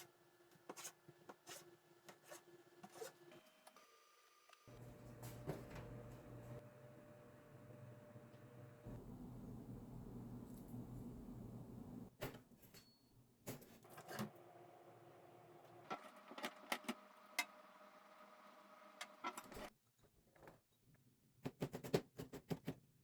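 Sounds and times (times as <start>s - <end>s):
faint steady hum: 4.7s - 12.1s.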